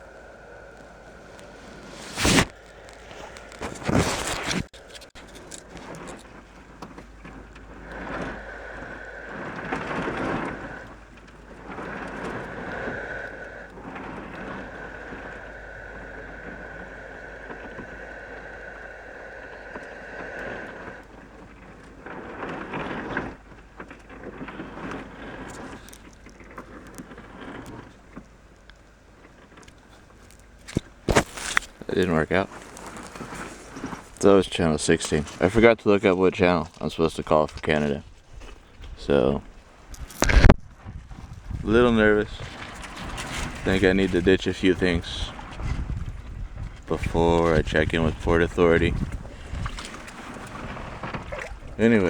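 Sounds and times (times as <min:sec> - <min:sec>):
radio static hiss and crackle: 0:00.0 - 0:23.4, 0:29.4 - 0:38.0, 0:39.0 - 0:40.6, 0:46.9 - 0:52.0
faint steady tone: 0:00.0 - 0:34.4.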